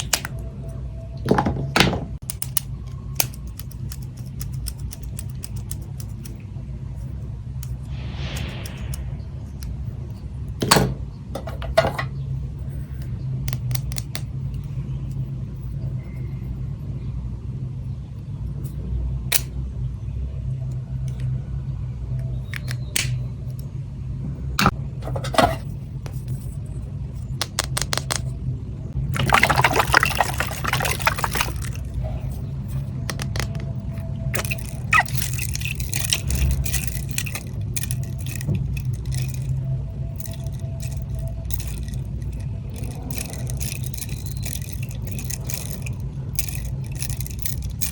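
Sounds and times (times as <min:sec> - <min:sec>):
small items tapping and clicking: 0:00.0 - 0:00.4, 0:27.4 - 0:28.3, 0:29.1 - 0:32.0, 0:33.1 - 0:39.6
steady low hum: 0:00.0 - 0:13.5.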